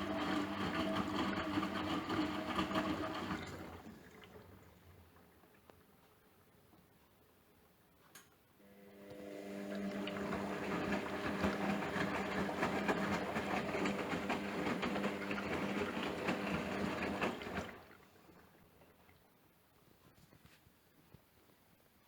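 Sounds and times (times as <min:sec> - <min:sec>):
drain pump humming: 0:00.0 - 0:05.3, 0:08.6 - 0:18.6.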